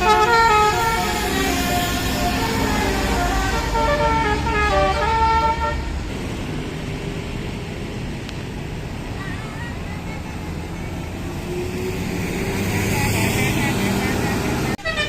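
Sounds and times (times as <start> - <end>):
bus horn playing a tune: 0.0 - 6.0, 14.8 - 15.0.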